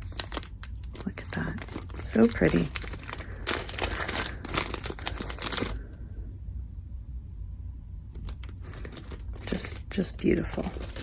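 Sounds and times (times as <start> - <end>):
plastic packaging crinkling: 0.0 - 6.0, 8.2 - 11.0
low steady hum: 0.0 - 11.0.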